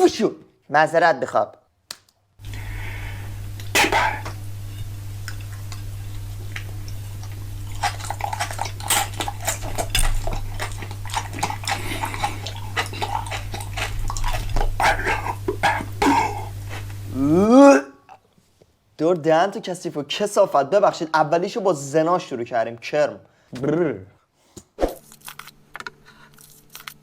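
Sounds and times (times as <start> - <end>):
low hum: 2.4 - 17.6
wet chewing and smacking: 5.2 - 17.0.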